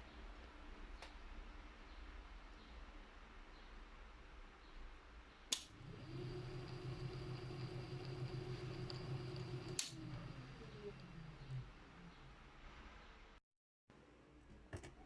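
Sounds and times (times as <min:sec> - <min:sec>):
typewriter motor hum: 0:05.7 - 0:12.2.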